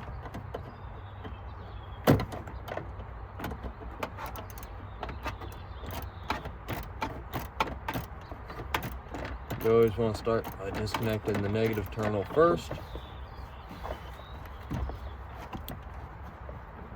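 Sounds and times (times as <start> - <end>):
tools clicking and tapping: 3.5 - 12.6.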